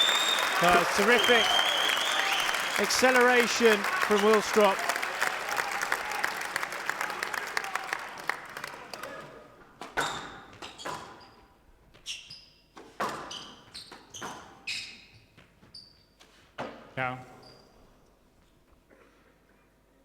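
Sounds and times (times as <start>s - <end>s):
spectator applause: 0.0s - 9.3s.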